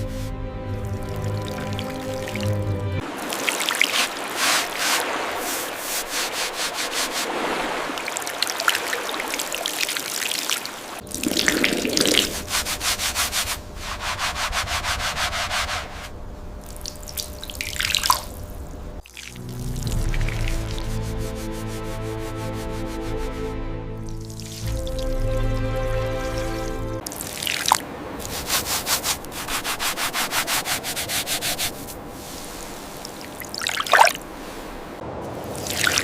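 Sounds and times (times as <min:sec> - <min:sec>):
abrasive scrubbing on hard surface: 0:03.6 - 0:07.8, 0:11.3 - 0:16.1, 0:20.4 - 0:23.5, 0:28.2 - 0:33.2.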